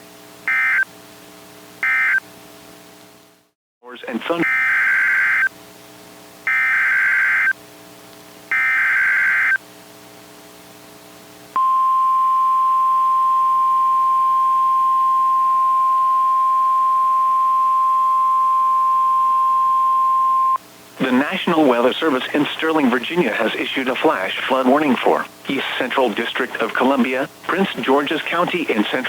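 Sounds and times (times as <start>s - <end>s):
steady warning alarm tone: 0.5s - 0.9s, 1.8s - 2.2s, 4.4s - 5.5s, 6.5s - 7.5s, 8.5s - 9.6s.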